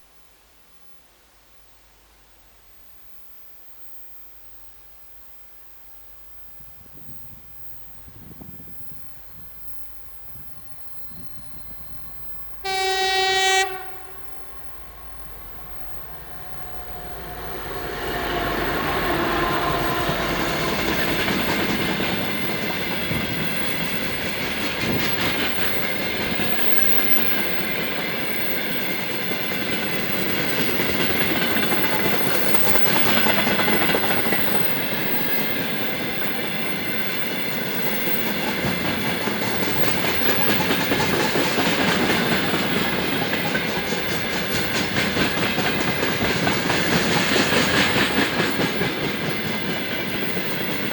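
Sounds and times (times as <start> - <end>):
freight train rolling past: 6.5 - 50.9.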